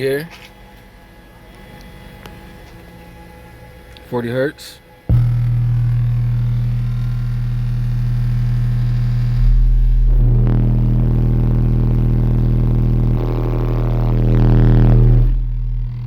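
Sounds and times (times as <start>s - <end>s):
subwoofer bass test tone: 5.1s - 16.0s.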